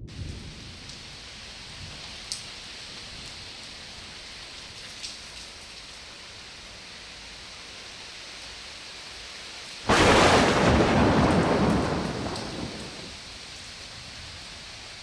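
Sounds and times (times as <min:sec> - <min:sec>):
heavy rain: 0:00.1 - 0:15.0
thunder clap rumbling: 0:09.9 - 0:13.2.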